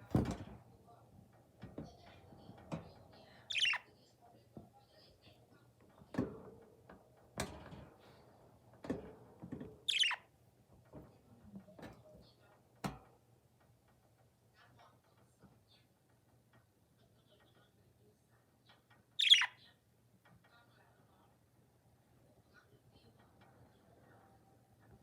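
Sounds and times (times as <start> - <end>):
budgerigar chirps: 3.5 - 3.8, 9.9 - 10.2, 19.2 - 19.6.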